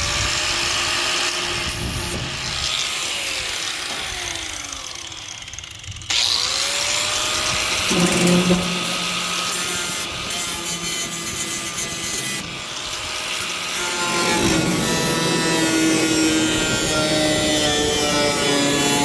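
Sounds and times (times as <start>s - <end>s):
power saw cutting sheet metal: 0.0s - 19.0s.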